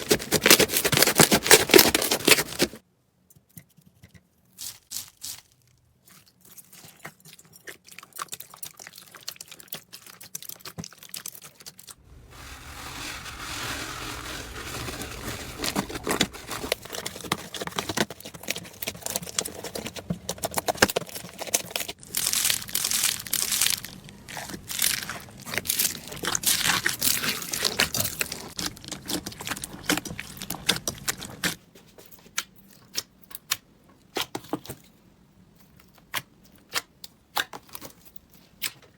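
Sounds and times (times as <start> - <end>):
crunchy slime crackling: 20.5 - 31.6.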